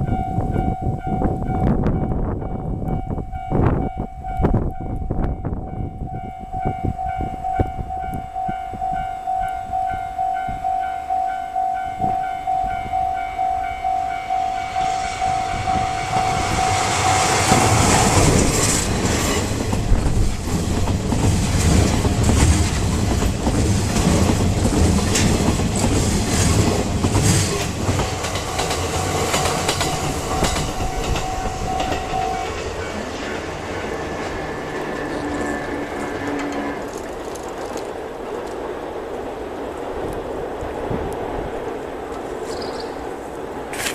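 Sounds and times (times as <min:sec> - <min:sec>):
level crossing bell ringing: 0:05.4 - 0:16.0, 0:29.9 - 0:33.0
locomotive rumble: 0:12.0 - 0:42.4
train wheels clicking over rail joints: 0:15.8 - 0:38.6.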